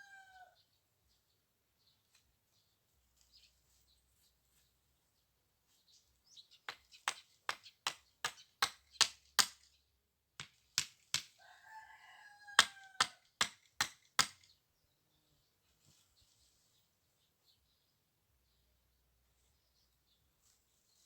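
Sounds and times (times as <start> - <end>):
rooster crowing: 0.0 - 0.6, 11.4 - 13.2
sharp knocks: 12.6 - 14.5.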